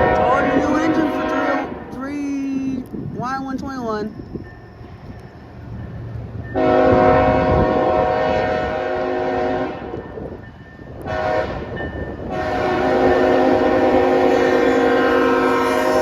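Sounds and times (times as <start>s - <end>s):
locomotive air horn blasts: 0.0s - 1.8s, 6.6s - 10.0s, 11.1s - 11.7s, 12.3s - 16.0s.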